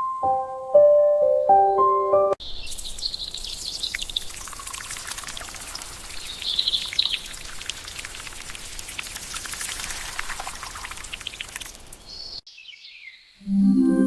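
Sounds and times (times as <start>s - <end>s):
small bird twittering: 2.4s - 4.9s, 6.1s - 7.4s
steady rain falling: 3.2s - 12.2s.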